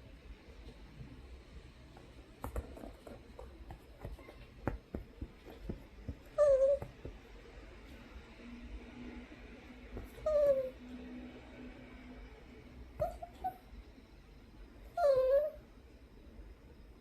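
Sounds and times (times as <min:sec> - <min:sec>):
dog whining: 0:06.2 - 0:07.1, 0:10.0 - 0:10.8, 0:13.0 - 0:13.7, 0:14.9 - 0:15.6.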